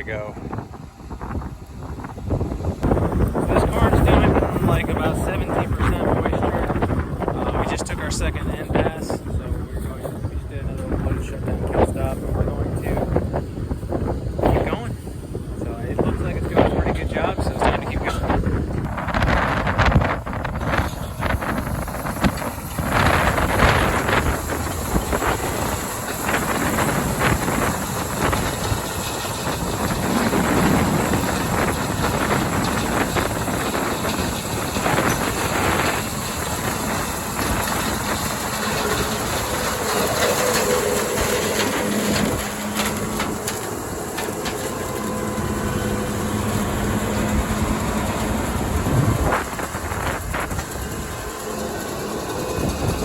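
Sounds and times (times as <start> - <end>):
combine harvester rattling: 0.0 - 53.0.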